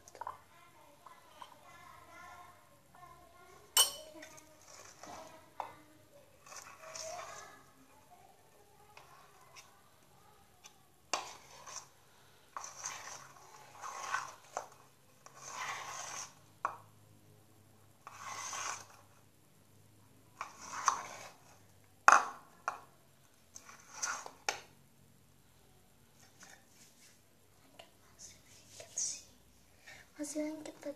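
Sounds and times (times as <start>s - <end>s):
stirring sticky mixture scraping: 3.5s - 16.9s, 17.9s - 19.3s, 20.3s - 24.7s.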